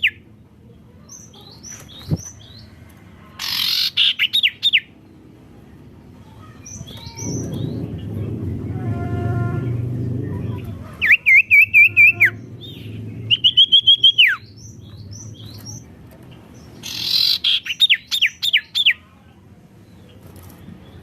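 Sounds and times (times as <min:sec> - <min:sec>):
songbird whistling: 0:11.0 - 0:14.8, 0:16.8 - 0:19.0.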